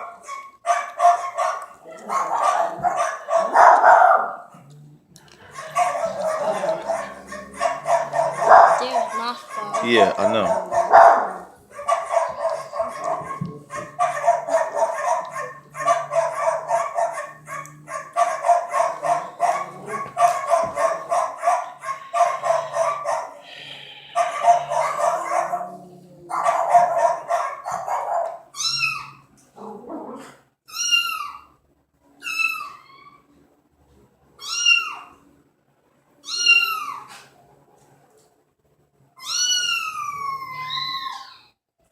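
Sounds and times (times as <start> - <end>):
harsh repeated cat calls: 19.0 - 25.3, 39.2 - 41.4.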